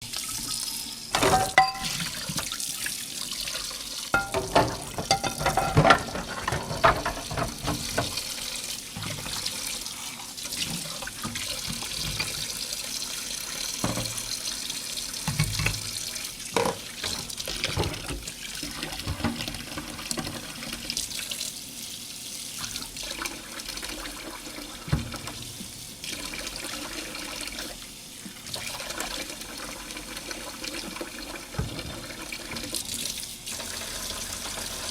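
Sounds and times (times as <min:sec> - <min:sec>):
tap water running: 0:00.0 - 0:34.9
dishes clinking and knocking: 0:01.1 - 0:02.0, 0:04.2 - 0:08.2, 0:16.6 - 0:18.0.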